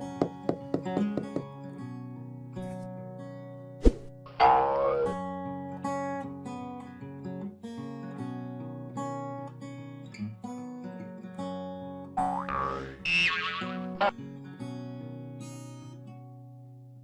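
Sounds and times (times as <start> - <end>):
acoustic guitar picking: 4.1 - 16.3
cartoon sliding pitch effect: 4.4 - 5.2, 12.2 - 14.1.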